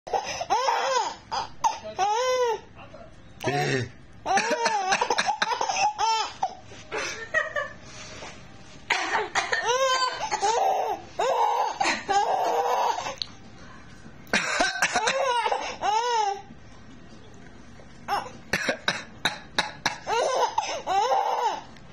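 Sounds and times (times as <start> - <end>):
baby laughing: 0.1 - 2.6, 4.3 - 6.6, 9.5 - 13.2, 15.0 - 16.4, 19.3 - 21.7
person coughing: 3.4 - 5.8, 8.9 - 10.6, 14.3 - 15.3, 18.5 - 20.0.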